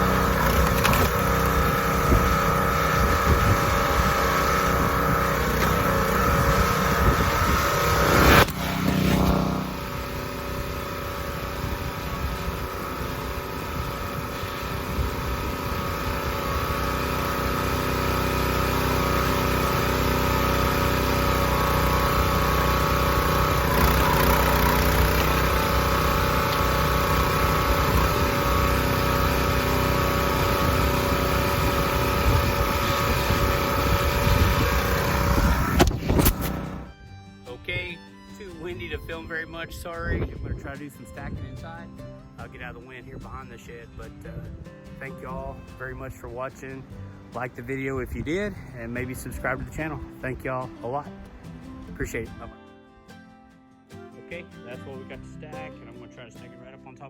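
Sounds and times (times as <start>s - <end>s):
gas engine running: 0.0s - 37.9s.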